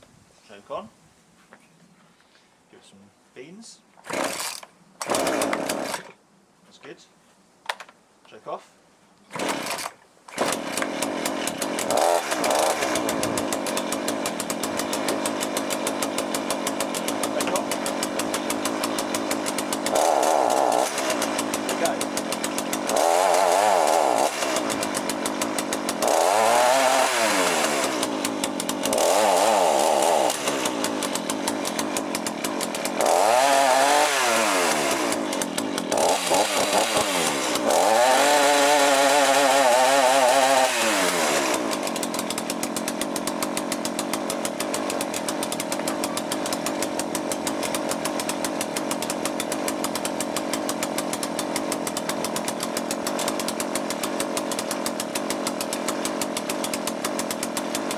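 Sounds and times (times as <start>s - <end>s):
chainsaw engine revving: 4.0s - 6.2s, 9.3s - 57.9s
chainsaw engine idling: 4.1s - 6.1s, 9.4s - 57.9s.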